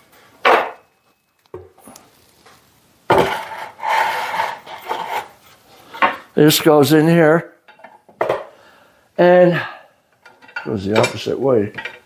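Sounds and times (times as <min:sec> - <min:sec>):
metal parts scraping and rattling: 0:03.2 - 0:06.0.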